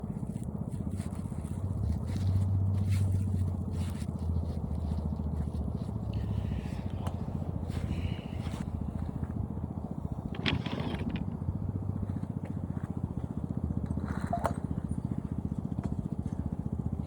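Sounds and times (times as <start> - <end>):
engine running with low rumble: 0.0 - 17.0
faint clicks and scrapes: 10.1 - 12.9.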